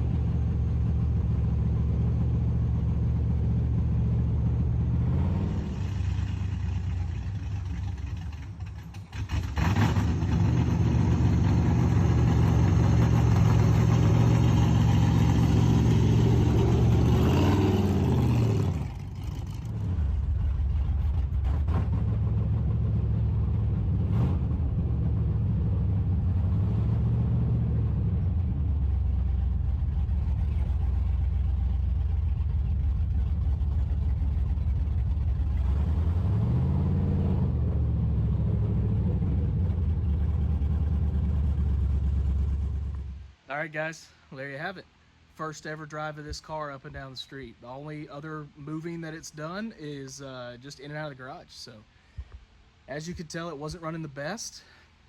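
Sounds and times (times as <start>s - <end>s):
car engine running: 0.0s - 43.2s.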